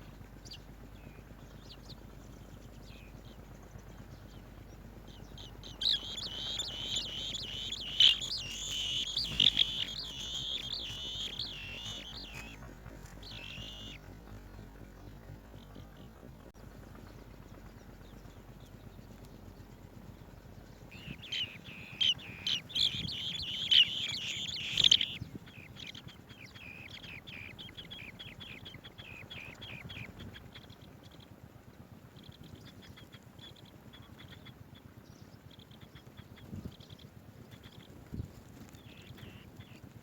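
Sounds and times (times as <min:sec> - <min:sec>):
birds chirping high calls: 0:04.9 - 0:16.1, 0:20.9 - 0:31.2, 0:35.2 - 0:39.9.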